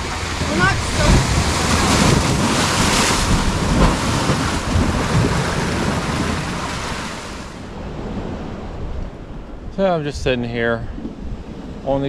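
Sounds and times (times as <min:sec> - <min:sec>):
ocean waves splashing over rocks: 0:00.0 - 0:09.2.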